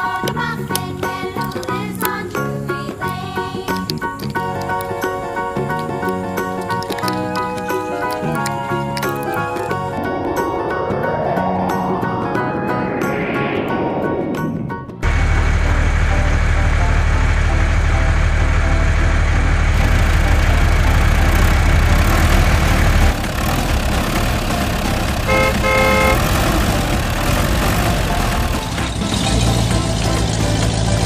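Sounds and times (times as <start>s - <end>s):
vehicle engine rumble: 0.0s - 31.0s
short horn toots: 25.2s - 26.3s.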